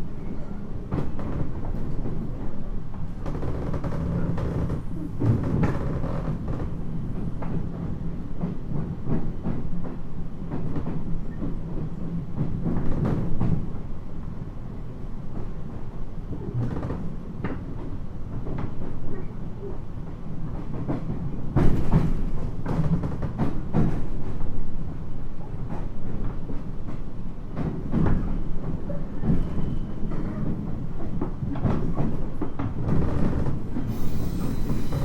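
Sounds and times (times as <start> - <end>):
train wheels rumbling on rail: 0.0 - 35.0
hiss: 33.9 - 35.0.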